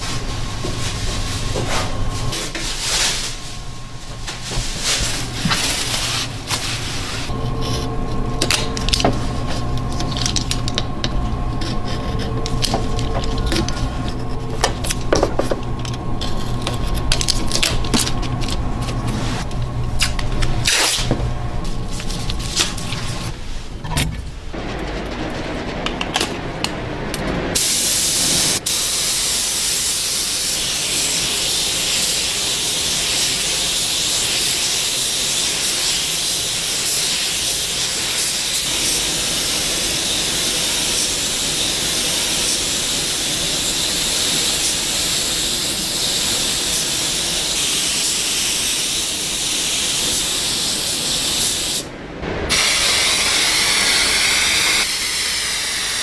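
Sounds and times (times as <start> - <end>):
loud steady hiss: 27.5 - 56.0.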